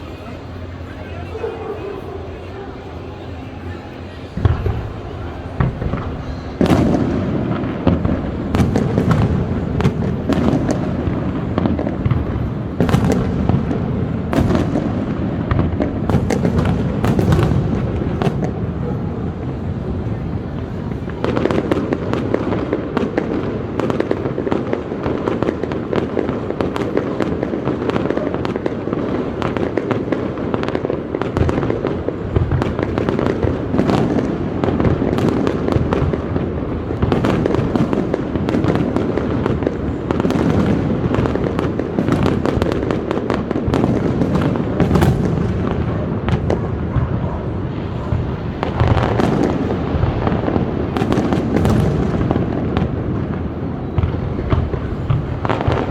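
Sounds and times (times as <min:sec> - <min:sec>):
continuous low rumble: 0:00.0 - 0:51.0
fireworks bangs and crackling: 0:00.0 - 0:55.9.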